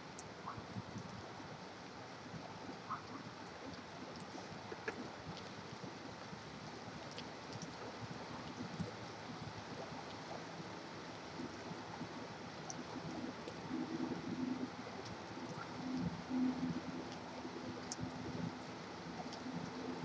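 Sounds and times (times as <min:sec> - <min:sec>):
rain: 0:00.0 - 0:20.0
faint dripping clicks: 0:02.7 - 0:05.6, 0:07.0 - 0:08.9, 0:12.5 - 0:20.0.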